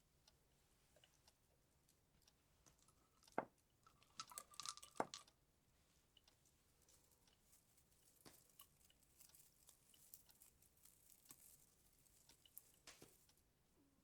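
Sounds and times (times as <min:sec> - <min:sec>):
baubles clicking and clinking: 0:02.6 - 0:05.3.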